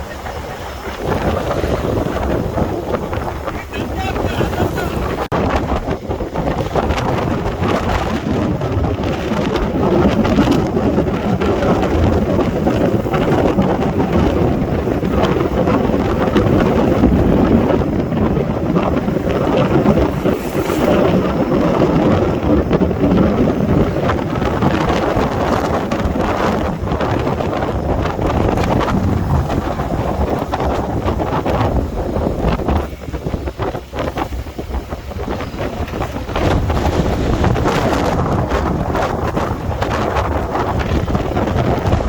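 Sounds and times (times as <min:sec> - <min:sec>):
wind buffeting microphone: 0:00.0 - 0:42.0.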